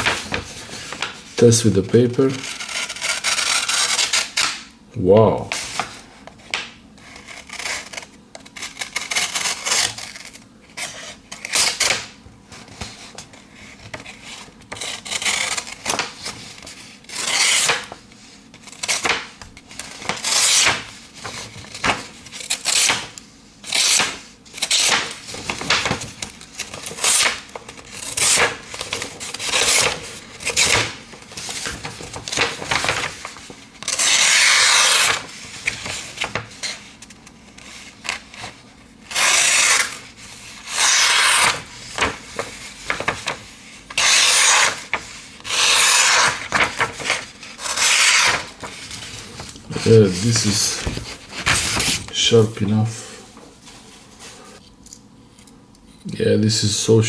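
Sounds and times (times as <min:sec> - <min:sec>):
knife slicing through paper: 0:23.7 - 0:36.4, 0:39.1 - 0:40.0, 0:40.6 - 0:43.4, 0:44.0 - 0:48.8.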